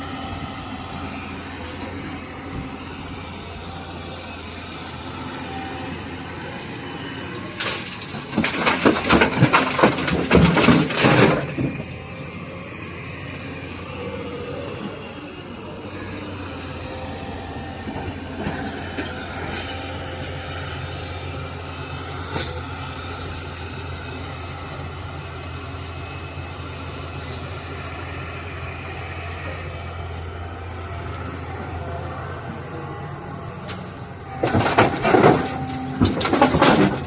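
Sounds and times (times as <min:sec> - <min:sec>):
excavator diesel engine running: 0:00.0 - 0:37.0
clatter of stone impacts: 0:07.6 - 0:12.0, 0:34.4 - 0:37.0.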